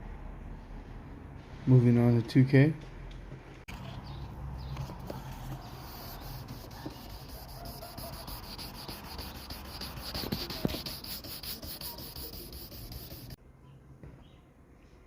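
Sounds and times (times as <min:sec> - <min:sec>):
sandpaper scratching on plastic: 0:04.8 - 0:13.4.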